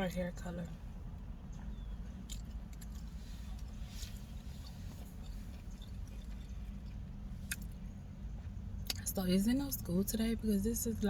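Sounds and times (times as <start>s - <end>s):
person chewing food: 2.1s - 7.8s.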